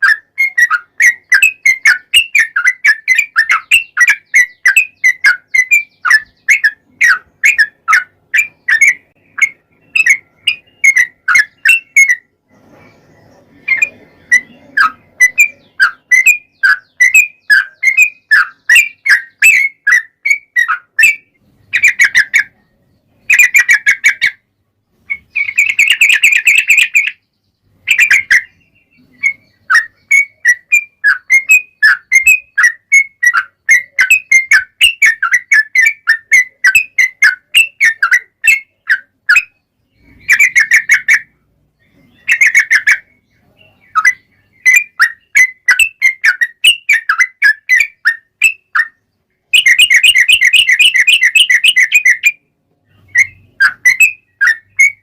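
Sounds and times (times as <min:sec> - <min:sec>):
bulbul chirping and trilling: 0:00.0 - 0:55.0.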